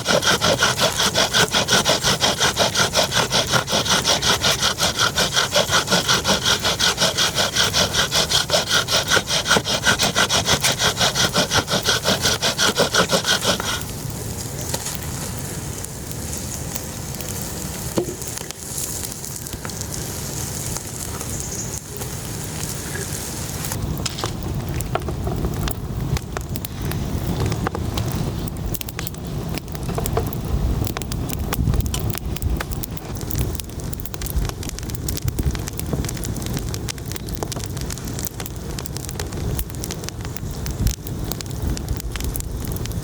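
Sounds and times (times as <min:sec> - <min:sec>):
hand saw cutting wood: 0:00.0 - 0:13.9
steady hiss: 0:00.0 - 0:43.0.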